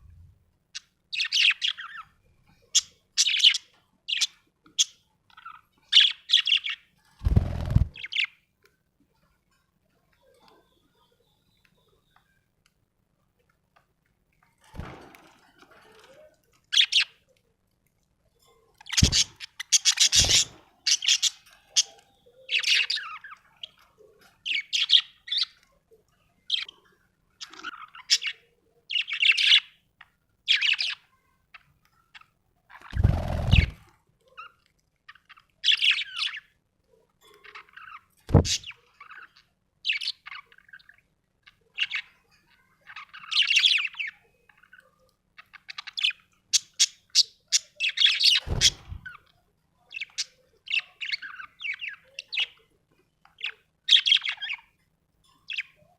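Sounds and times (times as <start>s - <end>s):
budgerigar chirping and warbling: 18.9s - 23.4s.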